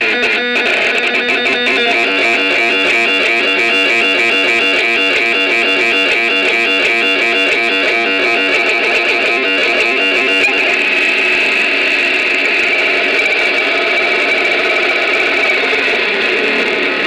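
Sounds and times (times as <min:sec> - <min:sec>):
synthesizer plucky notes: 0:00.9 - 0:10.8.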